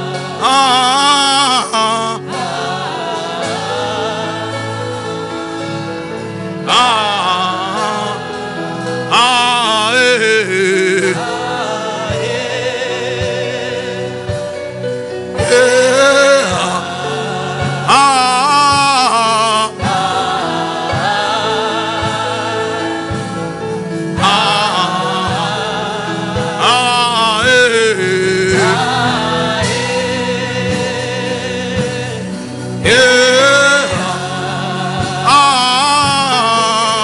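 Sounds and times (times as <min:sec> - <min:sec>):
singing with vibrato: 0:00.0 - 0:37.0
sustained keyboard chords: 0:00.0 - 0:37.0
low drum beat: 0:10.9 - 0:37.0.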